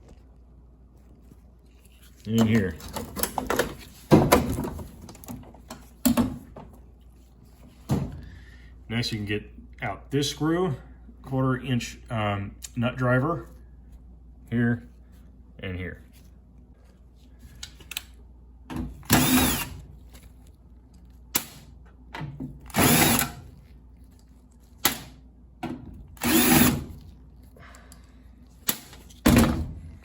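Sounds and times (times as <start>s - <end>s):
clicks of handling parts: 17.5s - 18.2s
cordless drill whirring: 19.0s - 19.9s, 22.7s - 23.5s, 26.2s - 27.0s.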